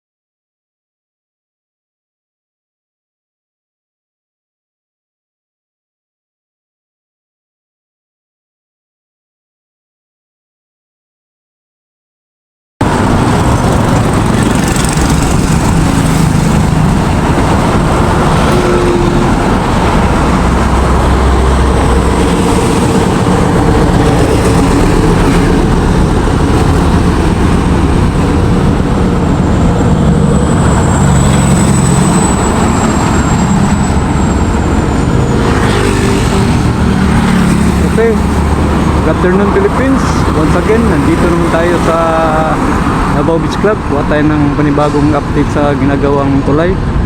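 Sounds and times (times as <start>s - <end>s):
motor vehicle road noise: 12.8s - 47.0s.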